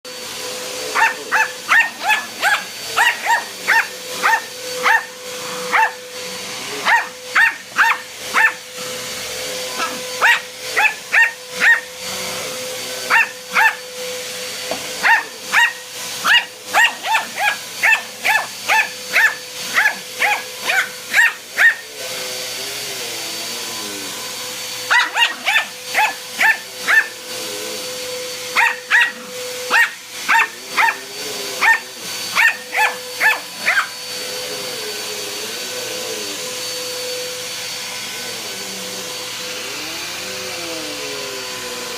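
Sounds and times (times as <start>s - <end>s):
vacuum cleaner motor humming: 0.0s - 41.9s
dog barking: 0.9s - 6.0s, 6.7s - 8.6s, 9.8s - 11.9s, 13.0s - 13.8s, 15.0s - 21.9s, 24.9s - 27.2s, 28.5s - 33.9s.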